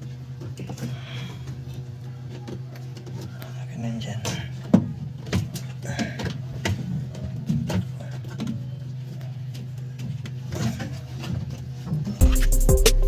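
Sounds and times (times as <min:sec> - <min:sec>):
steady low hum: 0:00.0 - 0:13.0
background music with beat: 0:12.2 - 0:13.0.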